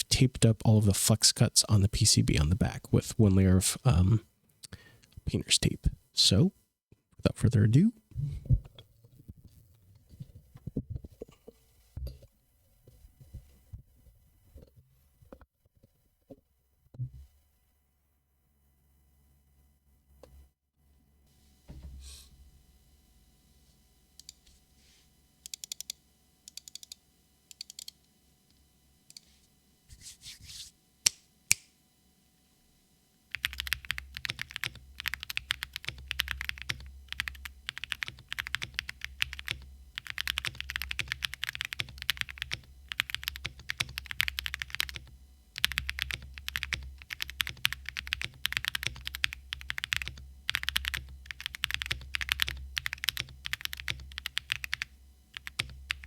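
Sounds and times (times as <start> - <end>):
mechanical keyboard typing: 33.3 - 56.0
sharp keyboard clacks: 33.3 - 56.0.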